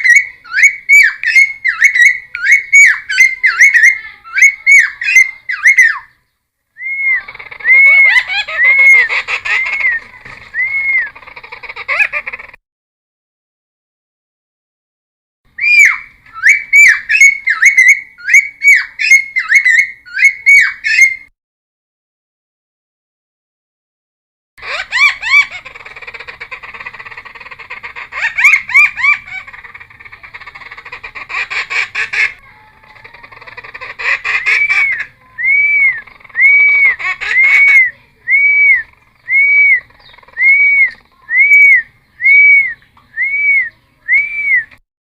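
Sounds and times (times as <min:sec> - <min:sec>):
songbird whistling: 0:00.0 - 0:11.2, 0:15.6 - 0:21.3, 0:33.5 - 0:44.8.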